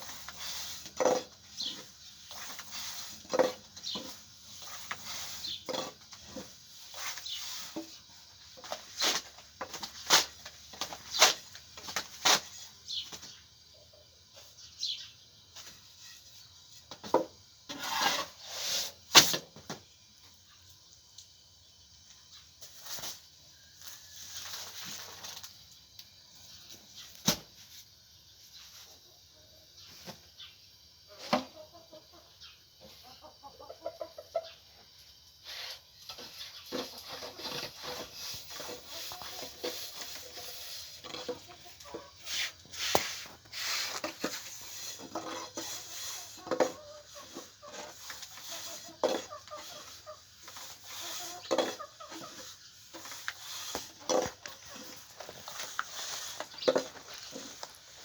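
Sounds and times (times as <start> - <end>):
chickens clucking: 0.0 - 14.7, 28.6 - 58.0.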